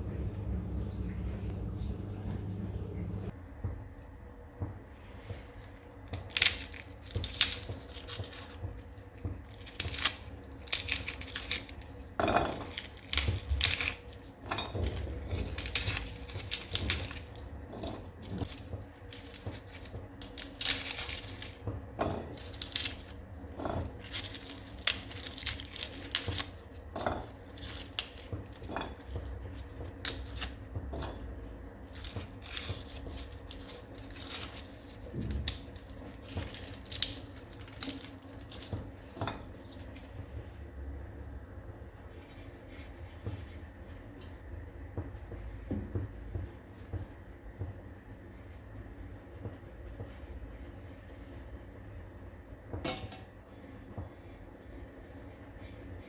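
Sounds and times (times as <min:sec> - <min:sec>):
tearing and crinkling: 0:05.6 - 0:21.6, 0:22.2 - 0:30.6, 0:31.8 - 0:38.9.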